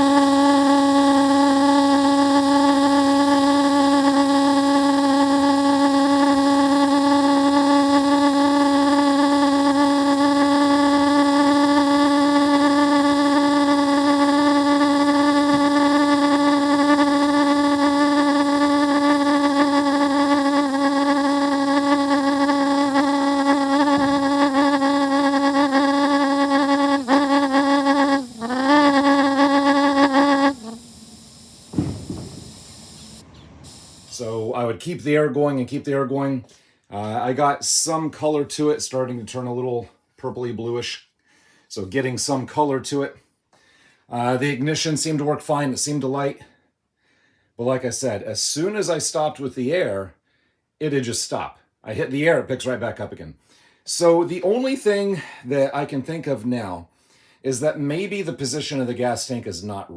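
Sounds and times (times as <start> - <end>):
pulse jet buzzing: 0.0 - 34.5
compressed air blowing: 0.0 - 34.6.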